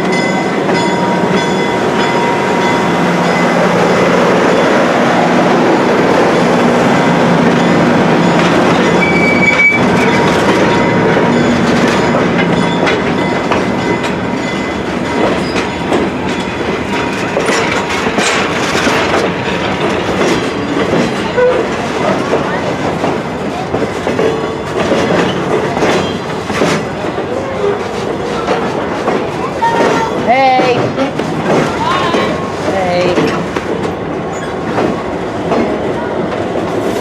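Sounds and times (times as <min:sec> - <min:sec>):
diesel locomotive engine running: 0:00.0 - 0:37.0
wheels clicking over rail joints: 0:07.4 - 0:37.0
high wheel squeal: 0:08.3 - 0:11.4.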